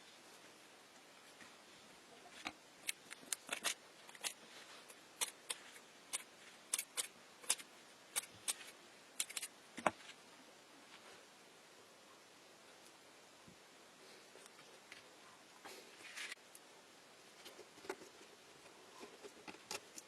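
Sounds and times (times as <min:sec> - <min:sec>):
sharp clicks and snaps: 0:02.8 - 0:04.4, 0:05.2 - 0:09.5.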